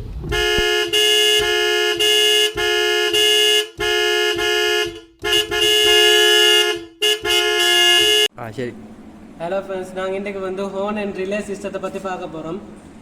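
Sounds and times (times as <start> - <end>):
car horn honking: 0.3 - 8.9.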